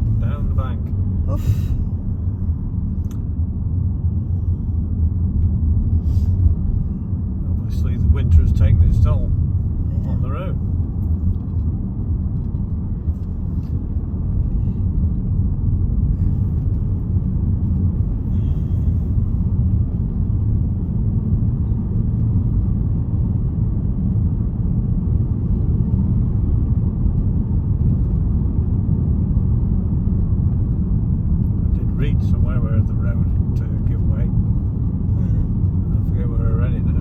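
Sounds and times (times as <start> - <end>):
car engine and tyre rumble: 0.0 - 37.0.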